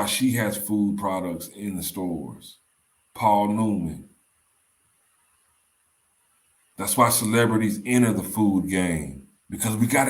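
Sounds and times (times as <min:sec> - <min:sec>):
faint background hiss: 0:00.0 - 0:10.0.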